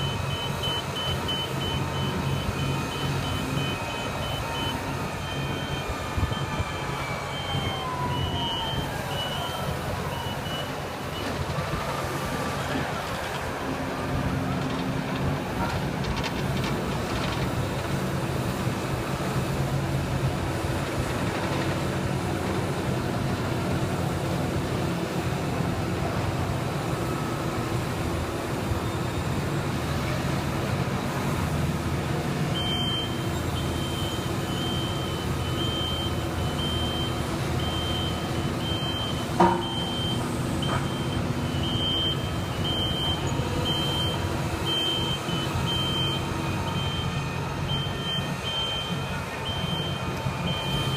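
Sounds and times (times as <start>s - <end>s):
backup alarm beeping: 0.0s - 11.2s, 32.6s - 50.9s
diesel engine running: 0.0s - 50.9s
loud metallic knock: 39.4s - 39.9s.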